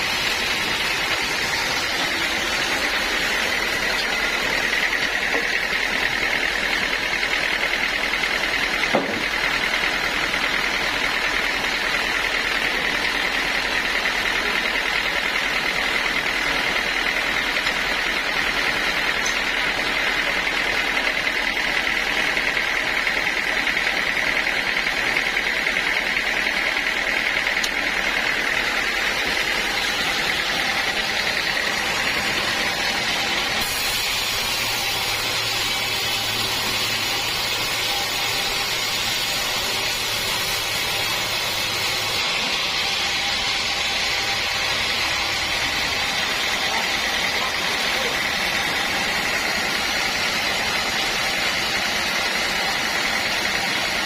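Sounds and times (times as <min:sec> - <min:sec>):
saw whining: 0:00.0 - 0:54.0
sharp knock: 0:08.9 - 0:09.3.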